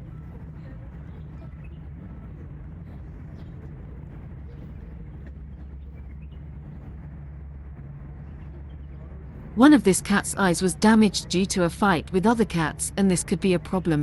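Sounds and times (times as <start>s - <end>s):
distant traffic rumble: 0.0s - 14.0s.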